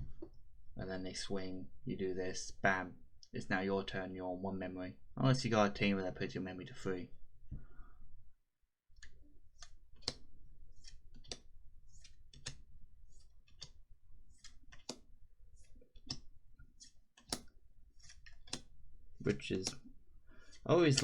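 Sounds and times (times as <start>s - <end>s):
cards clicking and snapping: 9.0s - 21.0s.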